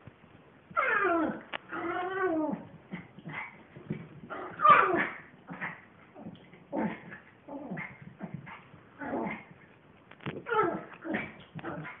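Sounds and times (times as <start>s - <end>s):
dog whining and yipping: 0.7s - 2.7s, 4.3s - 5.3s.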